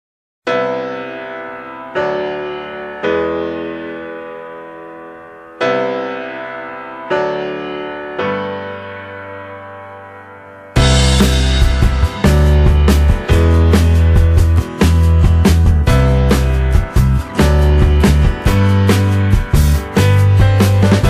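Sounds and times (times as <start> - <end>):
slow keyboard chords: 10.8 - 21.0.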